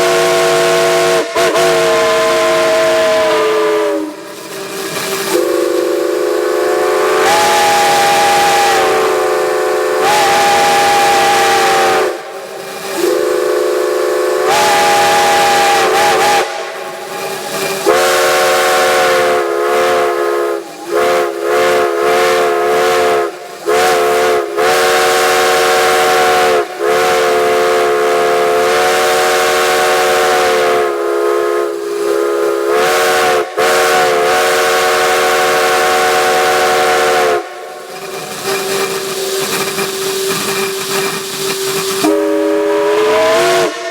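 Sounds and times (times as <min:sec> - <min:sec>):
steam hissing: 0:00.0 - 0:43.9
steam whistle blowing a chord: 0:00.0 - 0:43.9.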